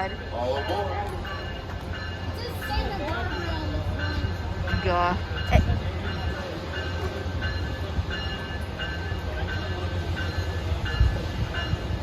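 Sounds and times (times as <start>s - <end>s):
diesel train rumble: 0.0s - 12.0s.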